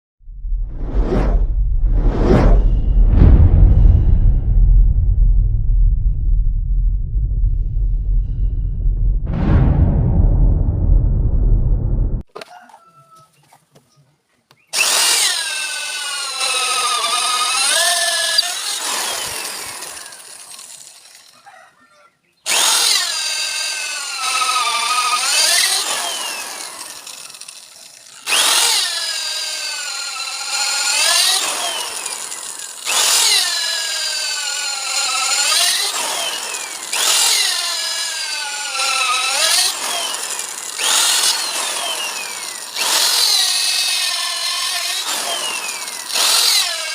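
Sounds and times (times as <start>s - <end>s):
electric drill boring into wood: 14.8s - 21.4s, 22.5s - 46.9s.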